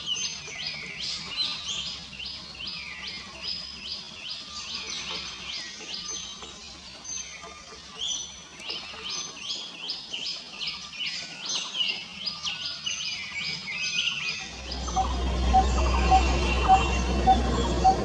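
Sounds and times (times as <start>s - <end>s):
bird chirping: 14.2s - 18.0s.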